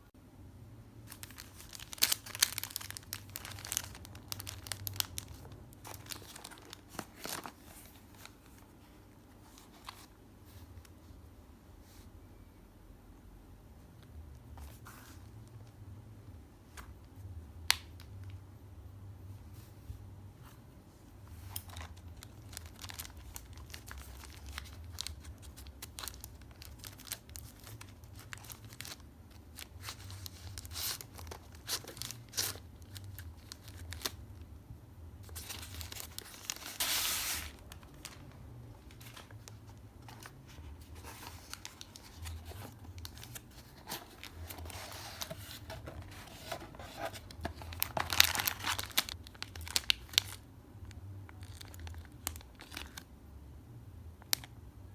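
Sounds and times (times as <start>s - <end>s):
packaging tearing and crinkling: 1.1s - 7.8s, 21.7s - 34.2s, 35.3s - 38.2s, 40.1s - 50.4s.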